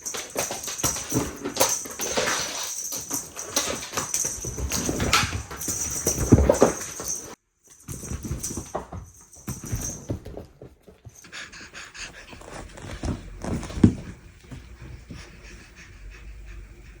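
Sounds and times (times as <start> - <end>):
cat panting: 11.2 - 17.0.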